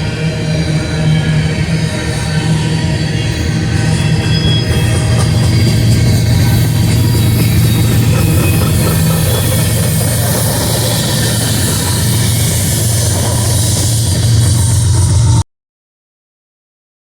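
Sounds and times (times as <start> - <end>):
diesel locomotive engine humming: 0.0 - 15.4
rail noise: 0.0 - 15.4.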